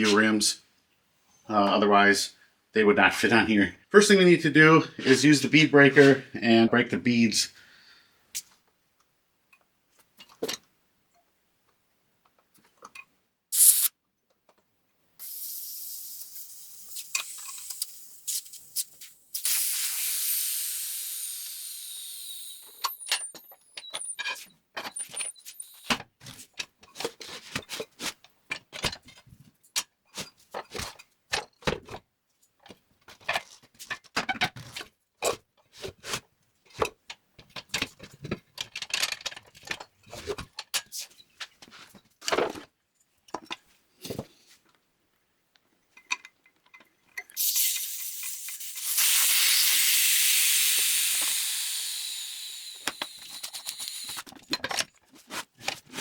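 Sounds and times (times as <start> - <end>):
air hissing out of tire: 13.5 - 13.9, 15.2 - 23.4, 47.4 - 54.2.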